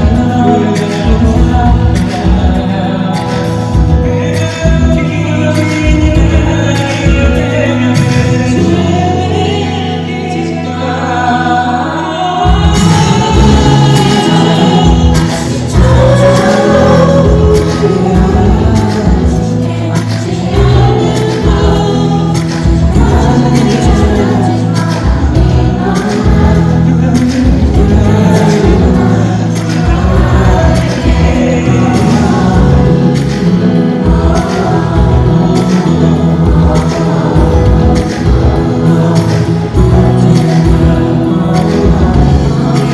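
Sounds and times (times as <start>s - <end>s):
live pop song singing: 0.0s - 42.9s
drum beat: 12.5s - 42.9s.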